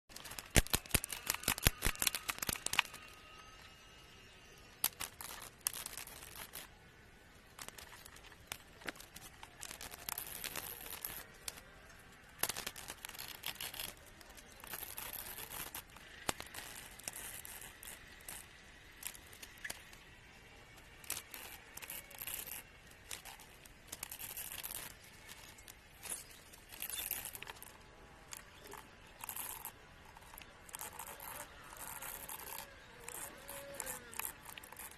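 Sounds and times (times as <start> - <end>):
plastic packaging crinkling: 0.1 - 3.2, 7.6 - 20.1
small hard parts clicking: 0.1 - 3.7, 4.4 - 34.9.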